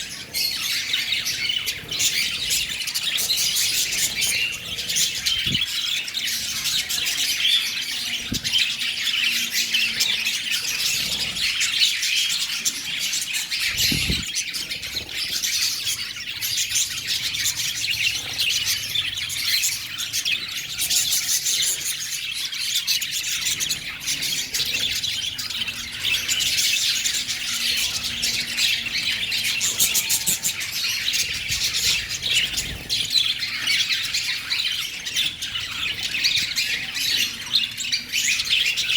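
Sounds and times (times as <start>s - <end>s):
lovebirds chattering and squawking: 0.0s - 38.9s.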